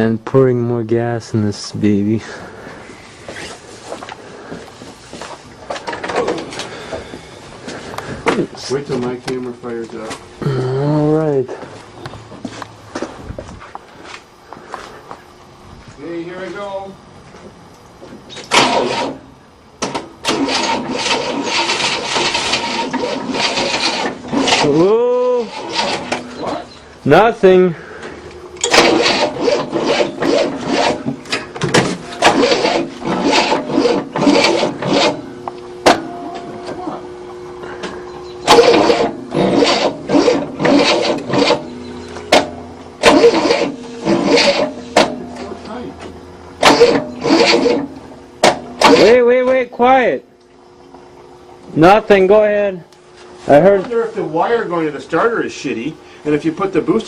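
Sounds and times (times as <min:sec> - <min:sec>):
starter motor cranking: 0:18.3 - 0:50.2
rasping scraping strokes: 0:20.3 - 0:26.7, 0:28.6 - 0:31.2, 0:32.2 - 0:35.3, 0:38.4 - 0:45.8, 0:46.6 - 0:49.2.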